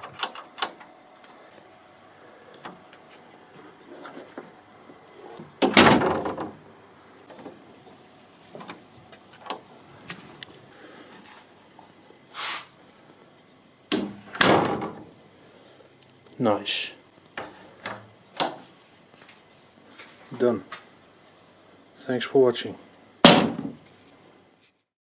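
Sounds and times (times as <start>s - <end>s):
door shutting knock: 23.2s - 23.8s.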